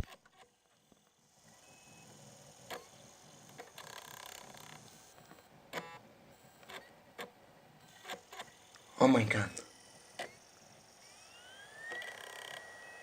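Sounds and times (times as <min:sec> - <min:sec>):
optical drive whirring: 0:00.0 - 0:13.0
optical drive clicks: 0:09.5 - 0:10.4, 0:11.9 - 0:12.7.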